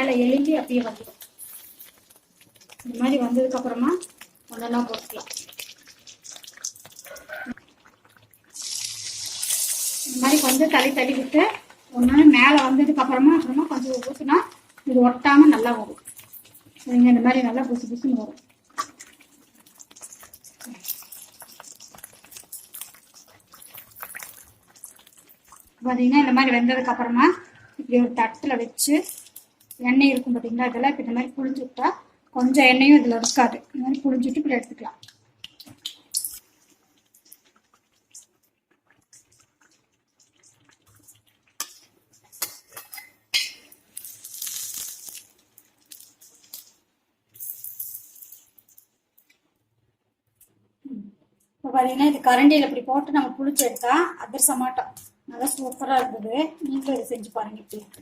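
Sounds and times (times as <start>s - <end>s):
dough deep-frying in oil: 0.0s - 58.0s.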